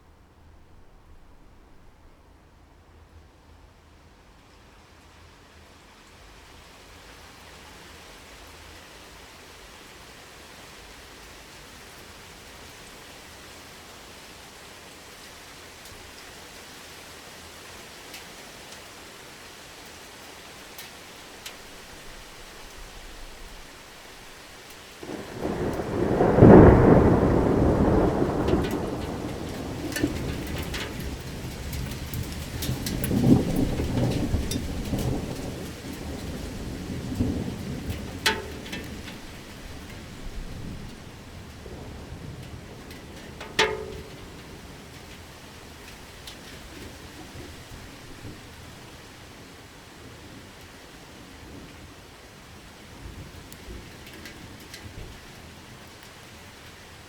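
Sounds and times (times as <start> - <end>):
steady rain falling: 0.0 - 57.0
thunder clap and rumble: 25.0 - 45.3.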